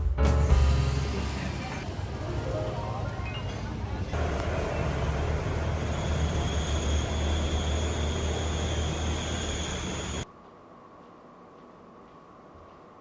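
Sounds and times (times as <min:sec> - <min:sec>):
low mechanical rumble: 0:00.6 - 0:10.2
faint high whine: 0:01.0 - 0:10.3.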